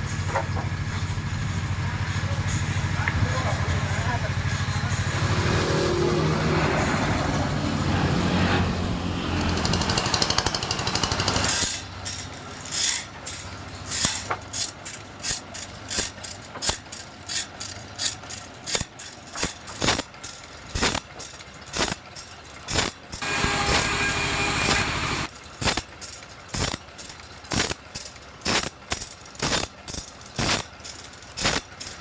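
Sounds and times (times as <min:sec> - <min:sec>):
sawmill machinery running: 0:00.0 - 0:32.0
sharp knocks and clatter: 0:00.2 - 0:01.2, 0:09.3 - 0:23.9, 0:24.7 - 0:32.0.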